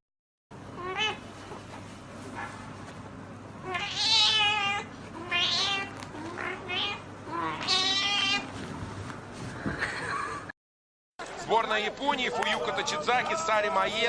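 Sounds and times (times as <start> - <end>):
cat meowing: 0.8 - 1.2, 3.6 - 8.5.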